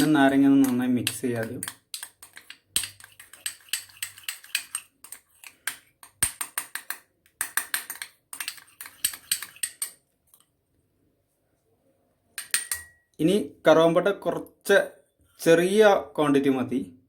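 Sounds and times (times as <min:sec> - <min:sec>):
spoon clicking against bowl: 0:00.0 - 0:10.0, 0:12.4 - 0:13.1.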